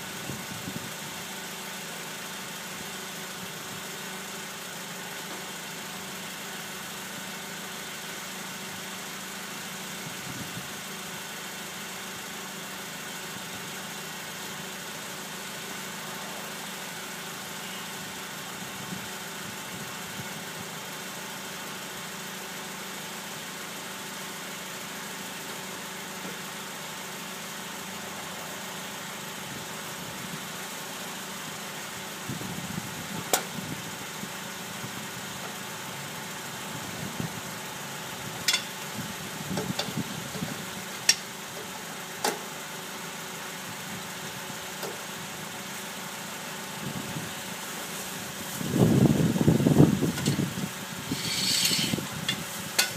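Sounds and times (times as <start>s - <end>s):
car engine idling: 0.0s - 52.9s.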